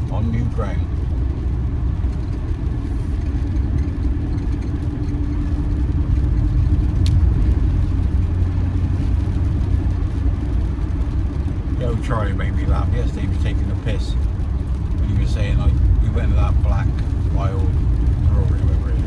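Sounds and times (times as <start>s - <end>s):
engine and road rumble: 0.0s - 19.0s.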